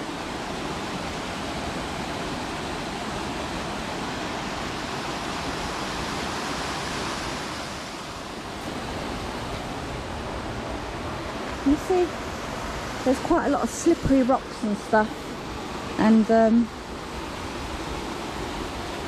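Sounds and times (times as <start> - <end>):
waterfall rushing water: 0.0 - 19.0.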